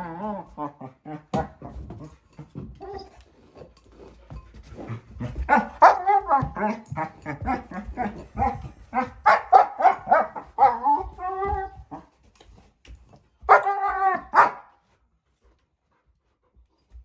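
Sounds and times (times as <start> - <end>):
puppy whining: 2.5 - 3.5, 10.4 - 12.1
puppy yapping barks: 9.0 - 10.8, 13.5 - 13.7, 14.3 - 14.7.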